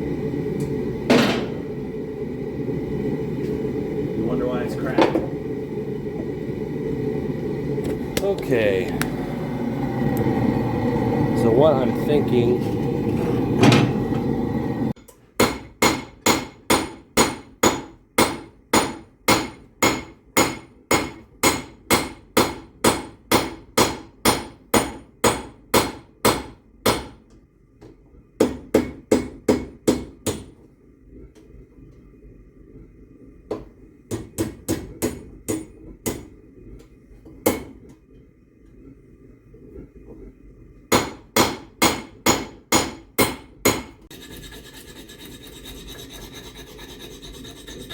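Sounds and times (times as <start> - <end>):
forge rushing noise: 0.0 - 15.0
hammer striking steel on anvil: 15.4 - 27.2, 37.4 - 37.8, 40.9 - 44.0.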